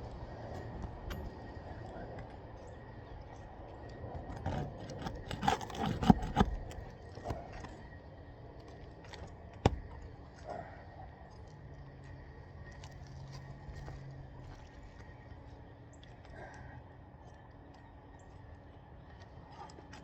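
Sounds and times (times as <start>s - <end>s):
tool scraping roof shingles: 4.4s - 7.7s.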